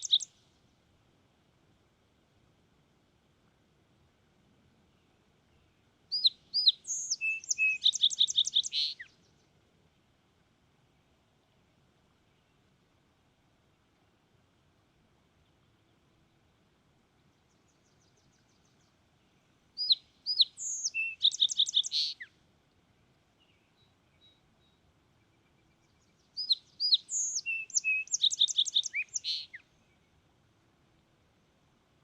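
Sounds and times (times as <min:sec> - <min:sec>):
sparrow singing whistled songs: 0:00.0 - 0:00.3, 0:06.1 - 0:09.2, 0:19.8 - 0:22.3, 0:25.6 - 0:29.7.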